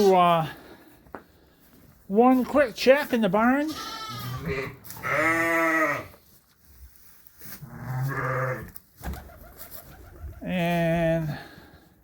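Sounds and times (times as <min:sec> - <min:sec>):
sheep bleating: 0:03.6 - 0:06.1, 0:07.7 - 0:08.7.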